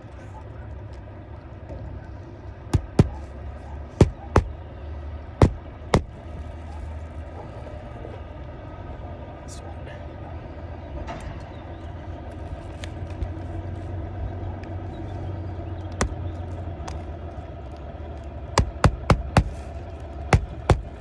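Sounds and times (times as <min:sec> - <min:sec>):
steady low background hum: 0:00.0 - 0:21.0
hammer striking nails: 0:02.8 - 0:03.3, 0:04.0 - 0:04.5, 0:05.4 - 0:06.2, 0:16.0 - 0:16.2, 0:18.6 - 0:19.7, 0:20.3 - 0:21.0.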